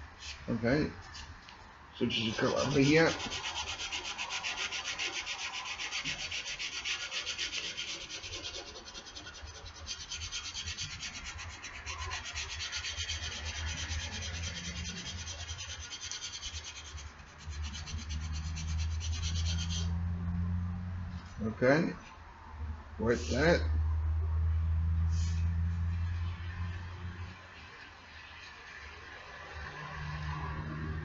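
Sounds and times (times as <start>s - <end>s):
sandpaper rubbing on steel: 2.1s - 20.0s.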